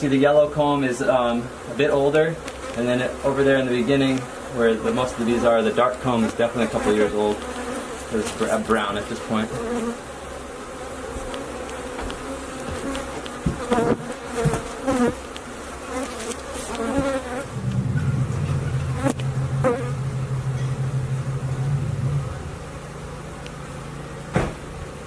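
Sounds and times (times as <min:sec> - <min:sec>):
honeybees buzzing: 0:00.0 - 0:25.0
low steady hum: 0:17.4 - 0:25.0.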